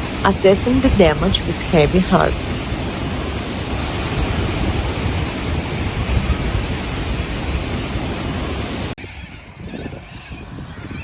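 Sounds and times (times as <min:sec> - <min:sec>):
storm wind and rain: 0:00.0 - 0:11.0
low rumble on microphone: 0:03.0 - 0:11.0.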